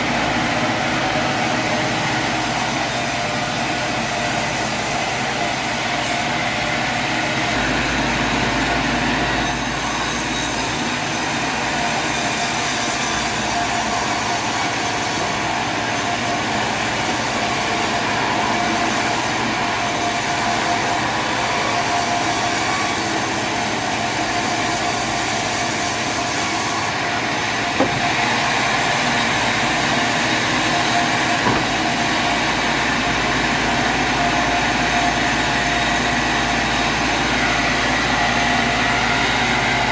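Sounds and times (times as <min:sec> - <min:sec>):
sawmill machinery running: 0:00.0 - 0:39.9
sharp knock: 0:27.8 - 0:28.2, 0:31.4 - 0:32.1.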